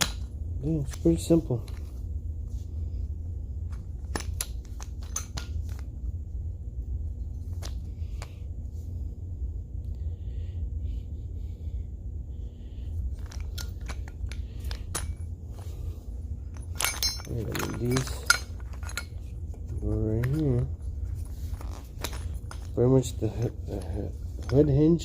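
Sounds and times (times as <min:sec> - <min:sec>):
steady low rumble: 0:00.0 - 0:25.0
small metal parts clicking: 0:13.1 - 0:15.7, 0:16.5 - 0:20.7.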